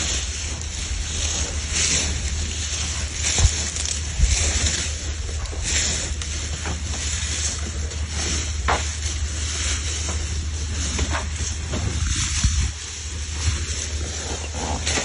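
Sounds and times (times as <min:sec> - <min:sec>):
low engine hum: 0:00.0 - 0:15.0
wind buffeting microphone: 0:11.6 - 0:14.1.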